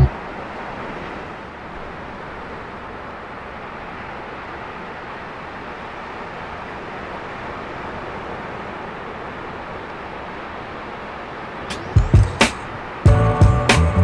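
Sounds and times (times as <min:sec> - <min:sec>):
breaking surf: 0:03.6 - 0:13.1.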